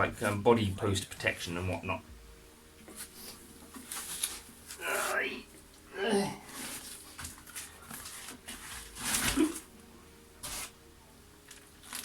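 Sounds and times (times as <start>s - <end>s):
packaging rustling and scraping: 2.9s - 4.8s, 6.5s - 9.7s, 10.4s - 10.8s, 11.5s - 12.0s.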